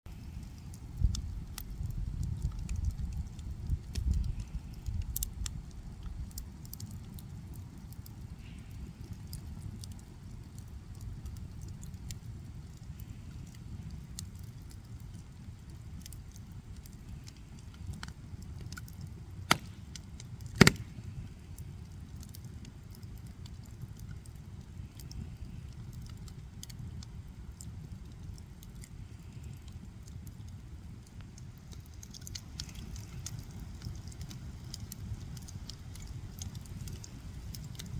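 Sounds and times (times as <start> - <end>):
fire crackling: 0.1 - 37.9
sharp loud pops: 19.5 - 19.8, 20.5 - 21.0.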